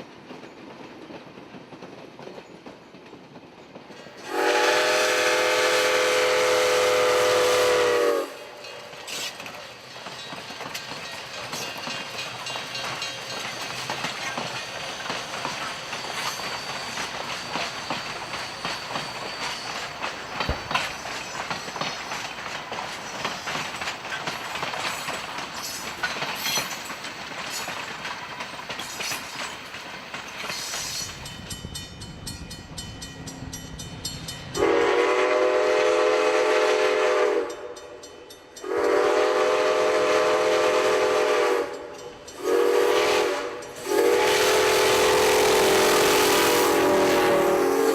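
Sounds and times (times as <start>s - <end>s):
wheels clicking over rail joints: 0.0s - 4.4s, 8.4s - 34.5s
steam train rolling past: 0.0s - 47.9s
steam whistle blasts: 4.2s - 8.6s, 34.6s - 37.7s, 38.6s - 47.9s.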